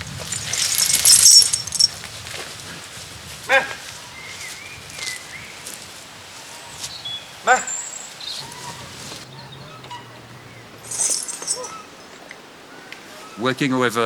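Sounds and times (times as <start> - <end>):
crackling and rustling: 0.0 - 7.0, 10.8 - 13.1
yelping animal call: 7.4 - 10.5.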